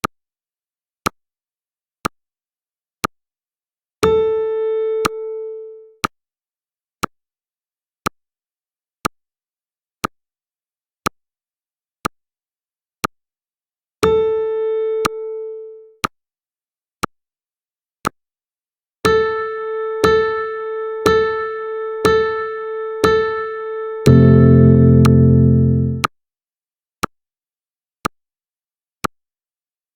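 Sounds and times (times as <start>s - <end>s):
loud buzzer tone: 24.0s - 26.0s
electronic ticks: 24.0s - 26.1s.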